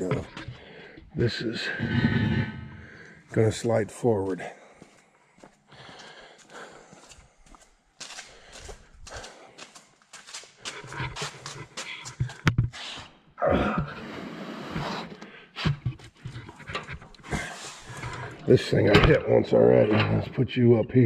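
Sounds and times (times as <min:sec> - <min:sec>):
man breathing hard: 0:00.4 - 0:01.2, 0:01.8 - 0:03.3, 0:04.6 - 0:09.8, 0:17.2 - 0:18.4.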